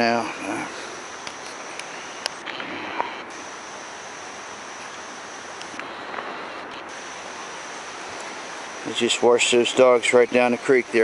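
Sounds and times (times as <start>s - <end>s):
insects chirring: 0.0s - 11.0s
faint clicks: 0.9s - 9.0s.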